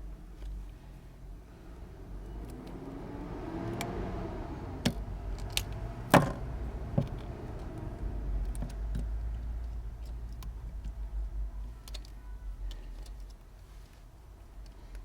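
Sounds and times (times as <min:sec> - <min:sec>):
small tool clicking on phone parts: 0:11.6 - 0:13.4.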